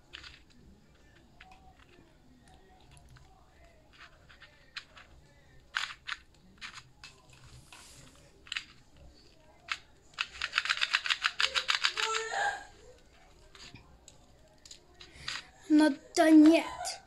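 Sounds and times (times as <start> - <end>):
puzzle cube clicking turns: 3.9 - 12.2, 13.2 - 15.5.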